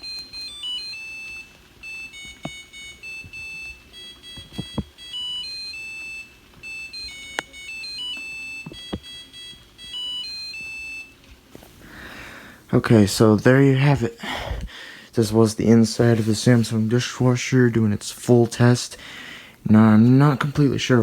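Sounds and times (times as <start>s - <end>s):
dishwasher beeper melody: 0.0s - 11.2s.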